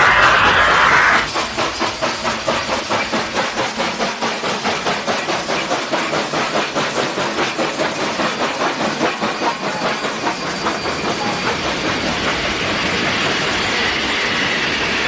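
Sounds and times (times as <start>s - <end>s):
low rumble: 0.0s - 1.4s
train running: 0.0s - 15.0s.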